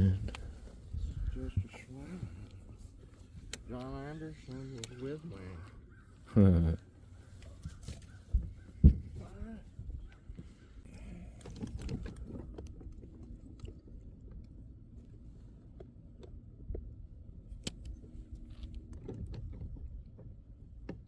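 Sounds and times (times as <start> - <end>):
low steady rumble: 0.0 - 21.0
handling clicks and knocks: 11.4 - 14.6.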